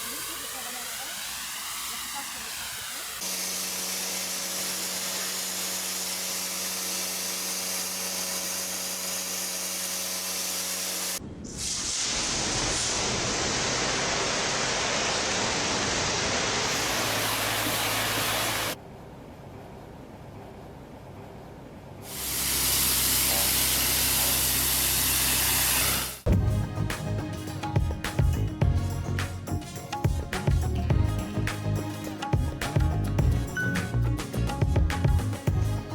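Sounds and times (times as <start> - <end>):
workshop tool hissing: 0.0 - 18.8, 22.1 - 26.3
steady hum: 13.1 - 35.9.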